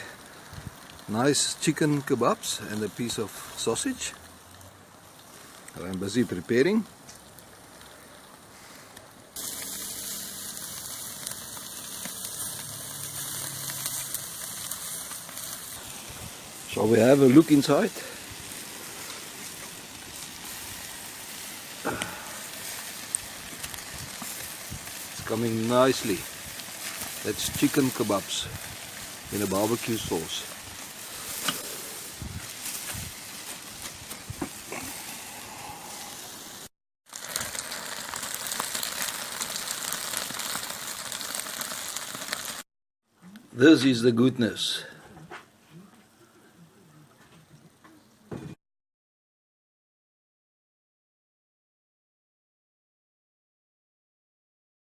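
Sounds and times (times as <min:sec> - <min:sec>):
kebabs sizzling on a grill: 0:00.0 - 0:42.7.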